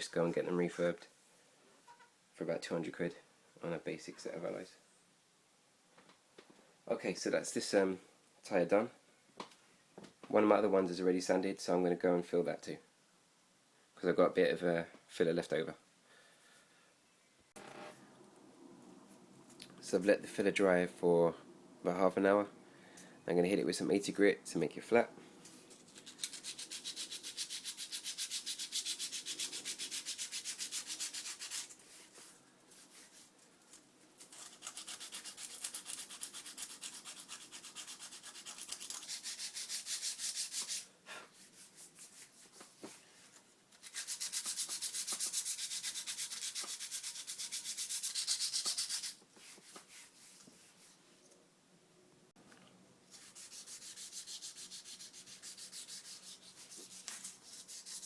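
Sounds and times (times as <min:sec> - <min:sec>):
sandpaper rasping on filler: 0:26.1 - 0:33.3, 0:34.4 - 0:42.5, 0:43.8 - 0:50.8, 0:53.1 - 0:58.0.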